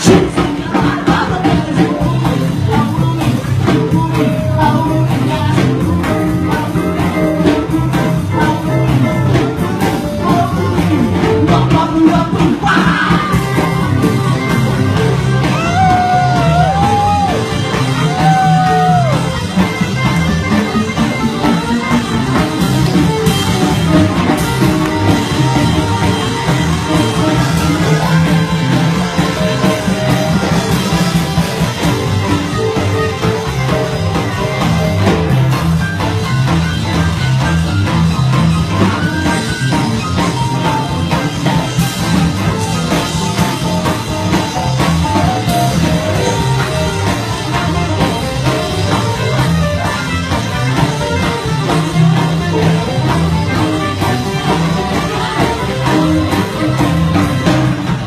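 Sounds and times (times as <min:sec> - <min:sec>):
person singing: 0:00.0 - 0:20.0
live rock and roll band: 0:00.0 - 0:58.0.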